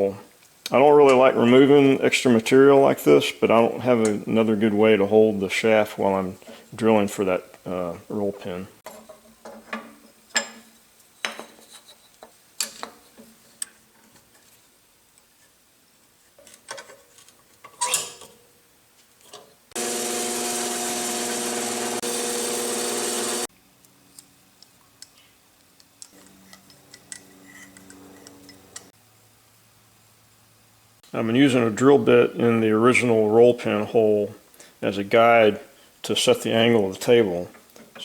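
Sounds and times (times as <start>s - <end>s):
electric drill drilling steel: 19.8s - 23.5s.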